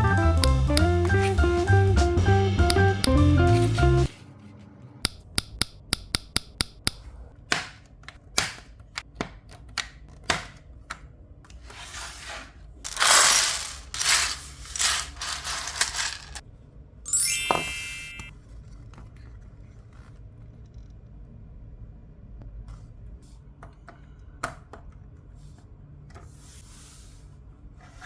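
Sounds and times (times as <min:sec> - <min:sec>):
loose plastic pieces rattling: 0:12.8 - 0:16.4
plastic bricks clicking together: 0:12.9 - 0:16.4.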